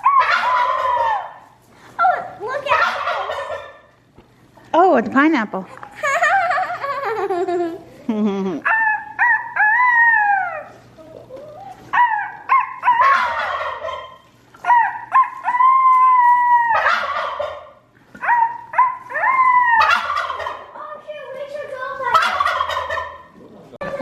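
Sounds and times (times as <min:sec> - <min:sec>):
turkey gobble: 0:00.0 - 0:01.5, 0:02.5 - 0:03.9, 0:08.6 - 0:10.8, 0:11.9 - 0:20.8, 0:22.0 - 0:23.4
turkeys yelping: 0:00.0 - 0:04.0, 0:08.6 - 0:24.0.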